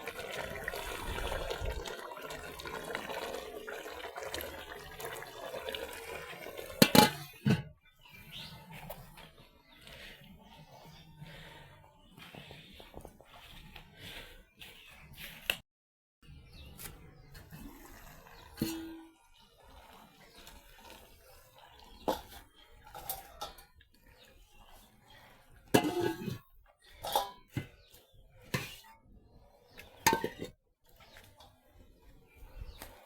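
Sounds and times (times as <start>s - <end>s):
dishes and utensils clinking: 6.8s - 7.6s, 25.8s - 26.4s, 27.0s - 27.6s, 30.1s - 30.5s.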